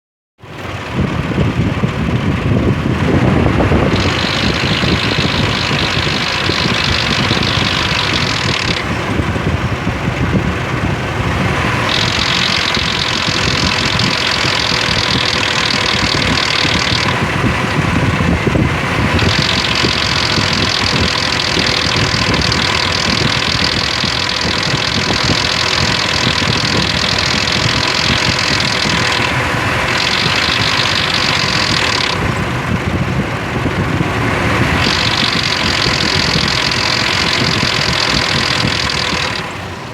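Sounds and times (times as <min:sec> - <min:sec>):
car engine idling: 0:00.4 - 0:39.9
timing chain rattle: 0:03.9 - 0:08.9, 0:11.9 - 0:17.5, 0:19.0 - 0:32.3, 0:34.8 - 0:39.5.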